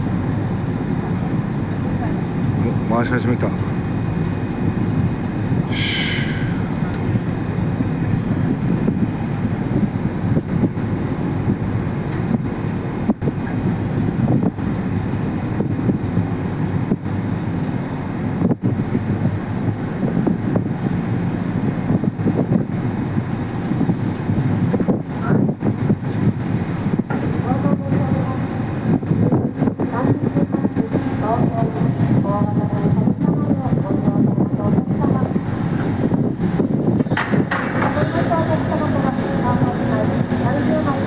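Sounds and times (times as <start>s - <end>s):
ferry engines rumbling: 0.0s - 41.0s
wind on microphone: 3.6s - 41.0s.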